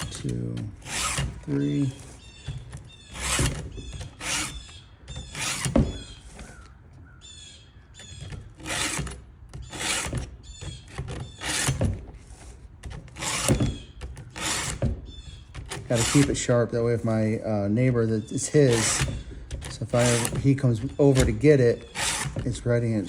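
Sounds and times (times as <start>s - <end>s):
file rasping on chainsaw chain: 0.0s - 2.0s, 3.1s - 4.6s, 8.6s - 10.3s, 11.0s - 14.8s, 15.7s - 16.5s, 18.5s - 23.0s.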